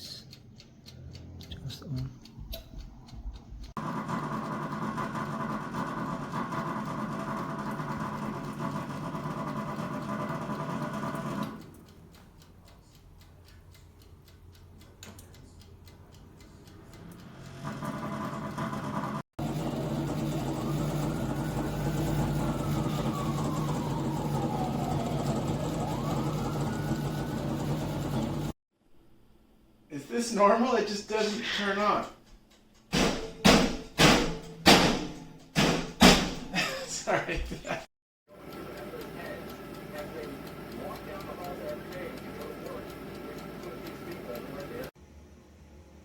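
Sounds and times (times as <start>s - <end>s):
oven fan motor humming: 0.2s - 28.6s, 37.8s - 46.0s
rising and falling tone: 16.7s - 28.5s.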